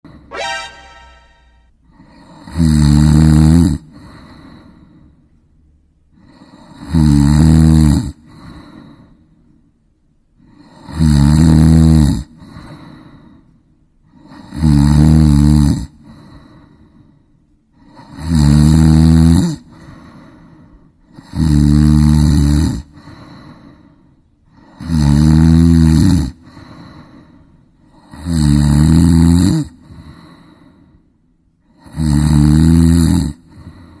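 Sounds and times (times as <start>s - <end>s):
quiet breaths: 3.8s - 7.0s, 8.1s - 11.0s, 12.2s - 14.6s, 15.8s - 18.3s, 19.6s - 21.4s, 22.8s - 24.9s, 26.3s - 28.3s, 29.7s - 32.0s, 33.3s - 34.0s
woman snoring loudly: 18.2s - 19.5s, 21.3s - 22.8s, 31.8s - 33.4s.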